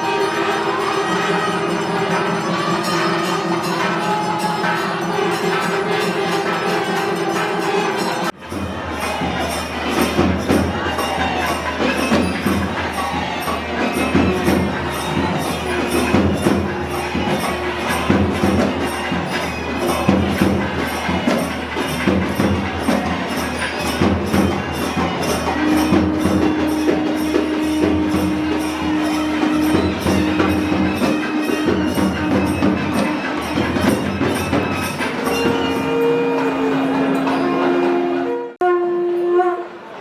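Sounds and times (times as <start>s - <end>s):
jingling metal strokes: 0.0s - 38.2s
rhythmic percussion: 0.0s - 38.6s
long held note: 25.1s - 40.0s.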